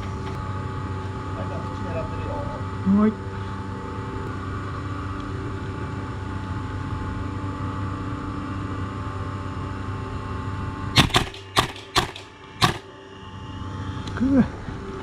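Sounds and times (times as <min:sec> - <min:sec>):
steady mechanical hum: 0:00.0 - 0:15.0
airsoft gun shots: 0:11.0 - 0:12.9.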